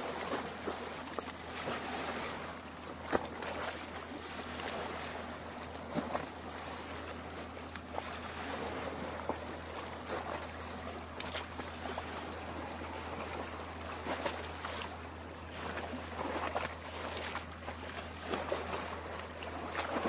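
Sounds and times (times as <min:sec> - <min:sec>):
waves lapping against shore: 0:00.0 - 0:20.0.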